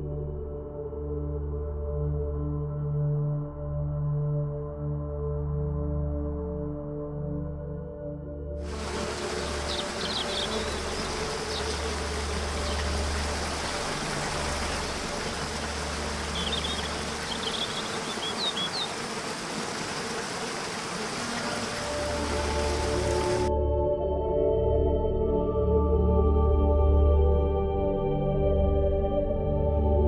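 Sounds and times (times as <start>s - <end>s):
dense nature hiss: 8.6s - 23.5s
high bird chirps: 8.8s - 23.5s.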